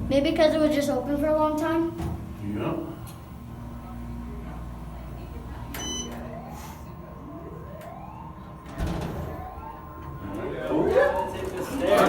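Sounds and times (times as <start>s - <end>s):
fire alarm whooping: 5.8s - 12.0s.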